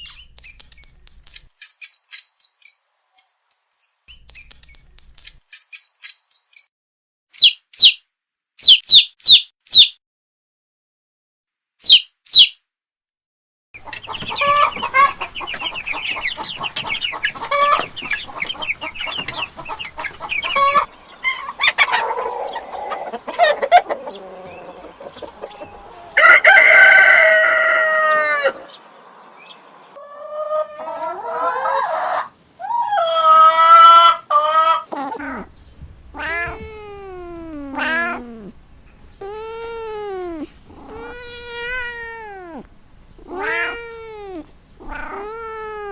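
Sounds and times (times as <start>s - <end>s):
chickens clucking: 13.8s - 28.9s, 30.0s - 45.3s
rooster crowing: 25.7s - 28.7s
cat meowing: 34.9s - 35.5s, 36.1s - 38.6s, 39.2s - 45.9s.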